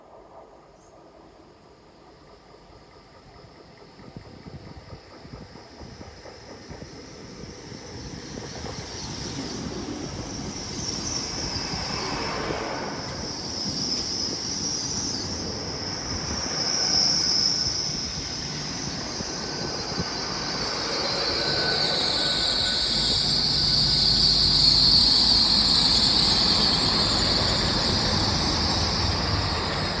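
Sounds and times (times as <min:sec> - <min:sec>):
train approaching: 0:00.0 - 0:30.0
wheel squeal: 0:06.6 - 0:30.0.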